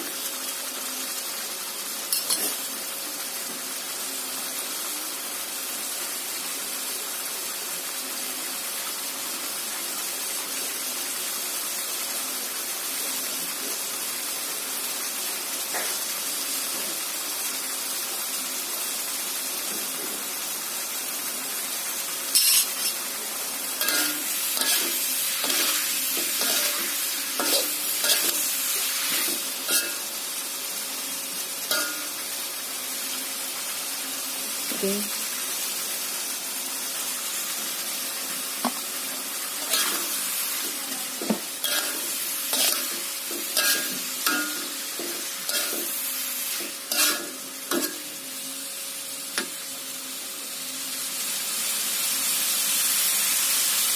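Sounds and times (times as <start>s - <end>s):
food sizzling in a pan: 0.0s - 53.9s
spatula scraping a pan: 22.4s - 23.0s, 23.8s - 30.1s, 39.6s - 40.7s, 41.3s - 48.1s.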